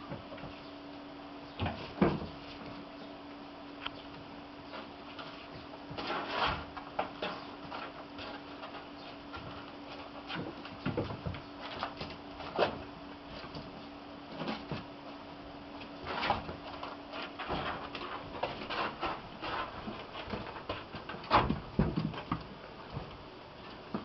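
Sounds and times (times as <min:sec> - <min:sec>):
steady low hum: 0:00.0 - 0:24.0
kittens scuffling: 0:03.8 - 0:24.0.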